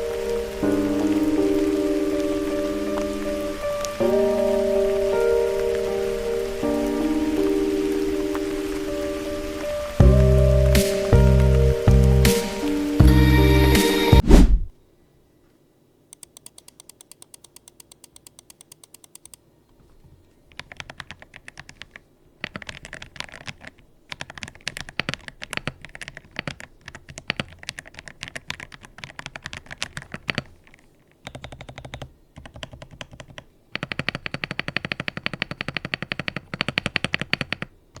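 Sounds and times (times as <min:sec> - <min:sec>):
mechanical keyboard typing: 0:16.2 - 0:19.4, 0:20.5 - 0:38.0.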